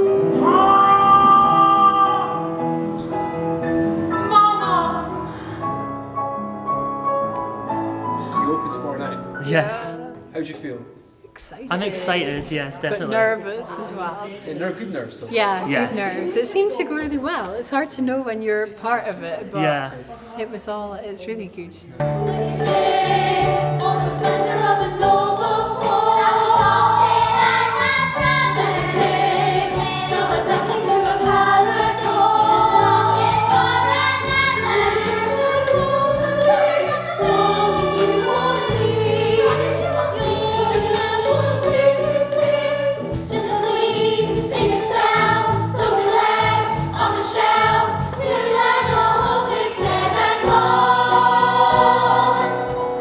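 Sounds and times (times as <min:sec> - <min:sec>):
chorus singing: 0:00.0 - 0:05.8, 0:22.0 - 0:53.0
instrumental accompaniment: 0:22.0 - 0:53.0.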